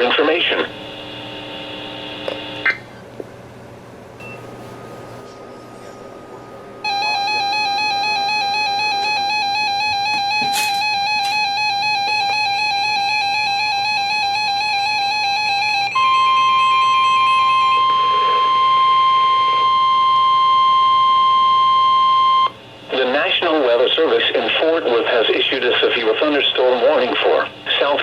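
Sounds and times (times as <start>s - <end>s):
single-pitch alarm tone: 6.8s - 22.6s
music with wavering held note: 6.9s - 19.8s.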